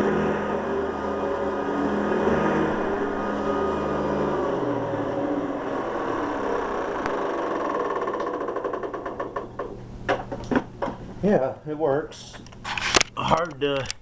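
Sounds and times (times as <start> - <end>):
vacuum cleaner motor winding down: 0.0 - 9.8.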